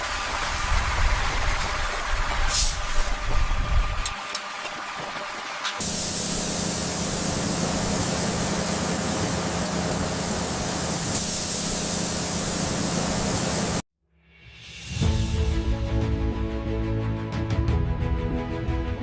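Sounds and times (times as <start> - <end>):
loud spraying hiss: 2.5 - 3.1, 5.8 - 13.8.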